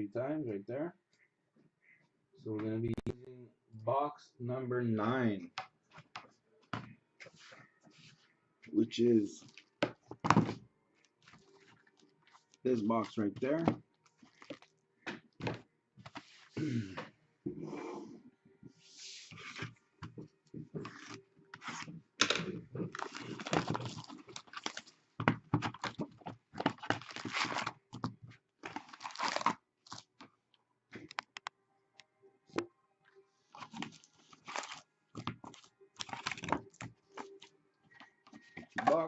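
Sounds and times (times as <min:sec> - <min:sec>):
wrapping tearing and rustling: 0:09.4 - 0:14.8, 0:20.8 - 0:30.4, 0:33.5 - 0:38.6.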